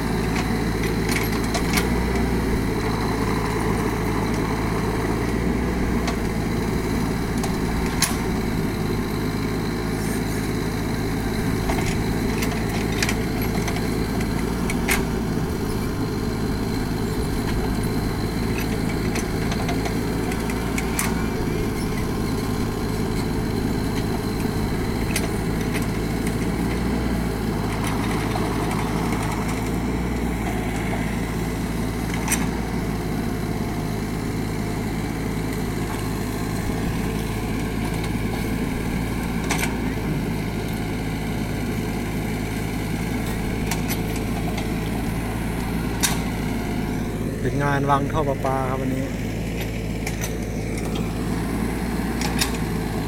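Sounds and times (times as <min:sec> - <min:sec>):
excavator diesel engine running: 0:00.0 - 0:53.0.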